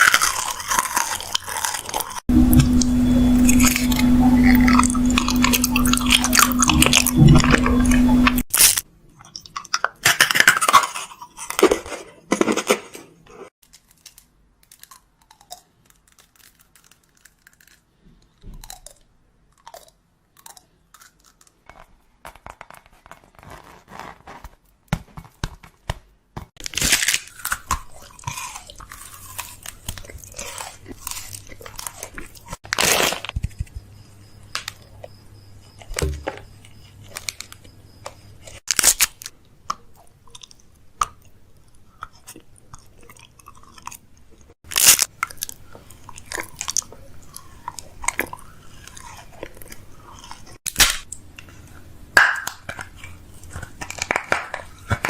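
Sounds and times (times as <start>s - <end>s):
packaging crinkling and tearing: 0.0s - 2.2s, 3.4s - 8.8s, 13.6s - 15.0s, 15.8s - 18.4s, 26.6s - 33.7s, 36.9s - 37.6s, 38.6s - 39.3s, 44.7s - 51.1s, 52.4s - 55.0s.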